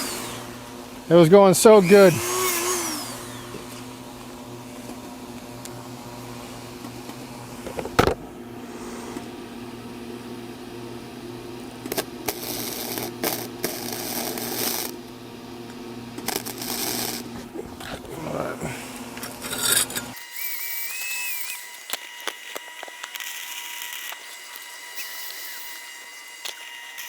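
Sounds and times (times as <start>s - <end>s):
welding arc crackling: 16.2s - 17.3s, 19.2s - 27.0s.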